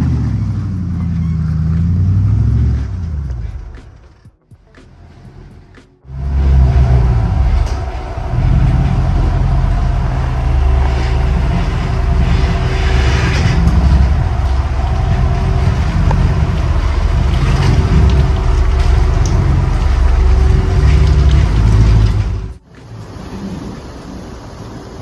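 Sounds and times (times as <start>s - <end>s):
engine running at low revs: 0.0s - 24.2s
hissing noise: 6.0s - 23.2s.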